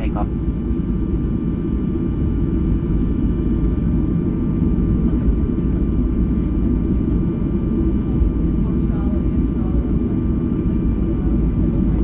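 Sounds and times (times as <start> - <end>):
faint steady whine: 0.0 - 4.8
aircraft cabin rumble: 0.0 - 12.0.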